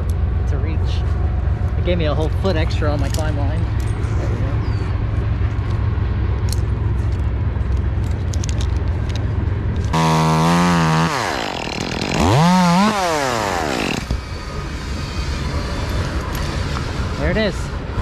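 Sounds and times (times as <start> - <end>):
chainsaw running and revving: 9.9 - 17.4.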